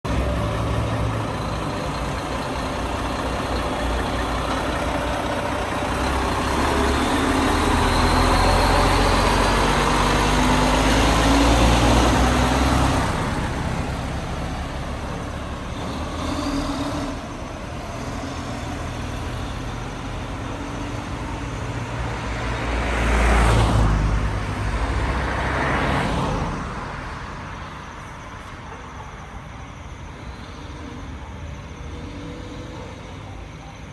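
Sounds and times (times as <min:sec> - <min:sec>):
vehicle engine running: 0:00.0 - 0:21.4
road noise: 0:00.0 - 0:33.9
vehicles passing: 0:00.0 - 0:33.9.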